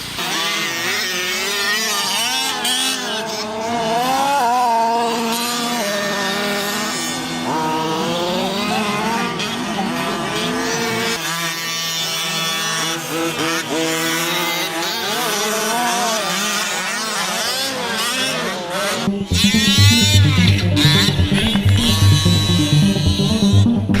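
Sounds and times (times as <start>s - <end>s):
rc car motors whining: 0.0s - 19.1s
loud music: 19.1s - 24.0s.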